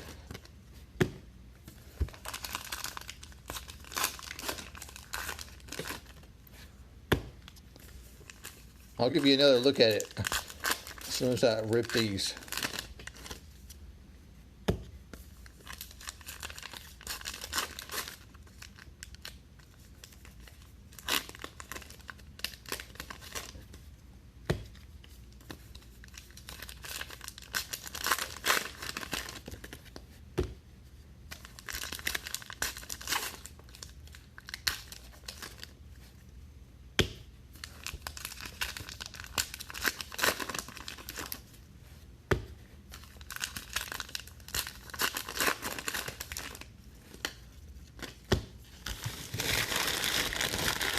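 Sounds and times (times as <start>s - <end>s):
card wrappers tearing and crinkling: 2.1s - 6.2s, 7.8s - 13.5s, 15.5s - 23.6s, 25.5s - 29.8s, 31.3s - 35.7s, 37.6s - 41.5s, 42.9s - 50.9s.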